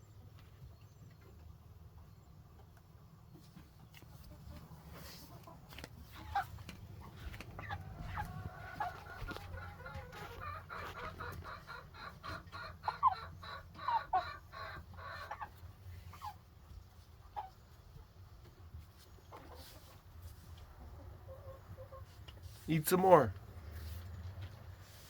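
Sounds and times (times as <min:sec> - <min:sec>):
chickens clucking: 0:00.0 - 0:25.0
chickens squawking: 0:03.9 - 0:18.0, 0:18.8 - 0:22.2.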